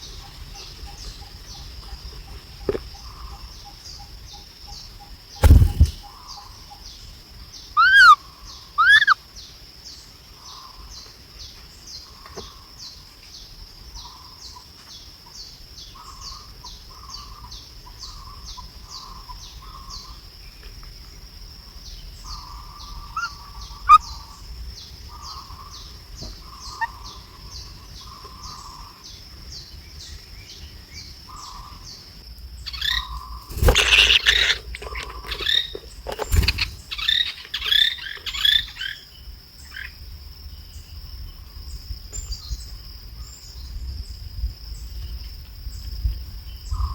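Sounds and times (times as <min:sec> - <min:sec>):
soft lower bird calls: 0:00.0 - 0:11.1, 0:21.9 - 0:39.9
loud rustling: 0:05.4 - 0:06.0, 0:33.5 - 0:37.0
sharp click: 0:05.4 - 0:06.0
loud arched bird chirps: 0:07.6 - 0:09.2, 0:32.7 - 0:39.0.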